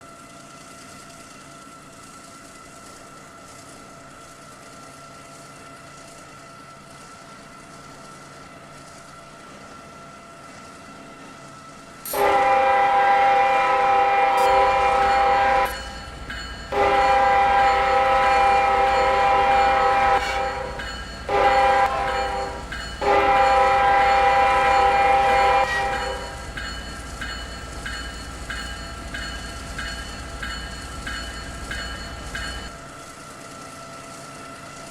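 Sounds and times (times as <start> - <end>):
low rumble of train: 0.0 - 34.9
locomotive air horn: 12.1 - 15.8, 16.7 - 26.4.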